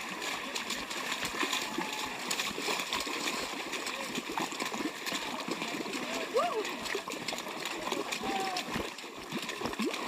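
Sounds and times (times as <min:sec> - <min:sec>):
feet splashing through mud: 0:00.0 - 0:10.0
faint voices: 0:03.2 - 0:09.0.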